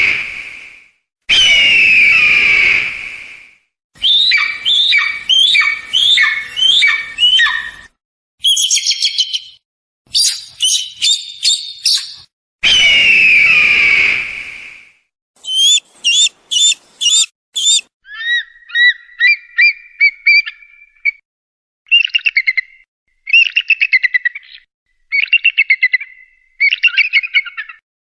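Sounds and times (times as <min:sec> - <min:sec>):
eagle calls: 0:04.0 - 0:12.2, 0:15.4 - 0:20.7.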